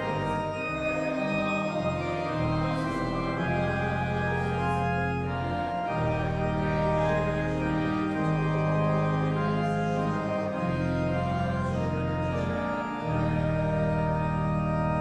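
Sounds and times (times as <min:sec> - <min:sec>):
church organ chords: 0:00.0 - 0:15.0.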